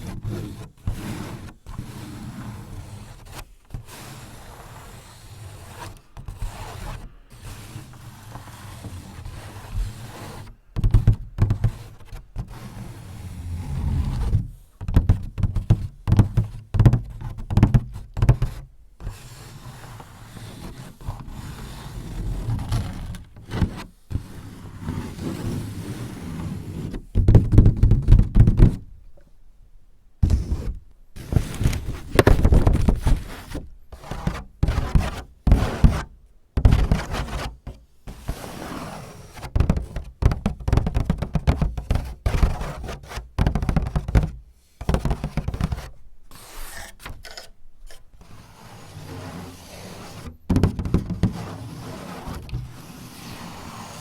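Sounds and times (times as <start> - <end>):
tapping and scratching: 39.6 - 48.2, 50.3 - 51.4.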